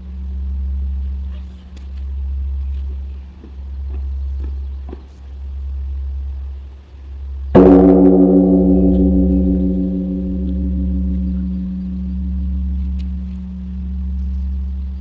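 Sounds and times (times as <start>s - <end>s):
large bronze bell ringing: 7.6s - 15.0s
low rumble: 7.6s - 15.0s.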